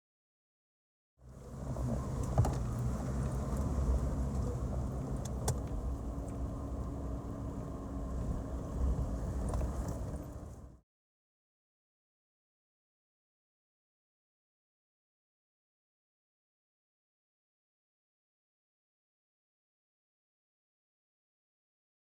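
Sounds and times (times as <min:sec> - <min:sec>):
engine and tyre rumble: 0:01.2 - 0:10.8
vehicle knocks and rattles: 0:01.8 - 0:06.4.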